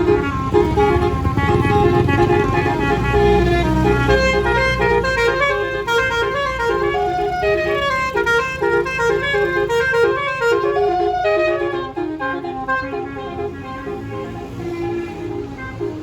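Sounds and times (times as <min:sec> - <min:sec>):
horn playing a quick melody: 0:00.0 - 0:16.0.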